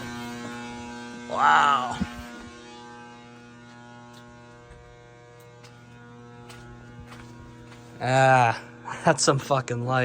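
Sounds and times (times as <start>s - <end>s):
lamp ballast humming: 0.0s - 10.0s.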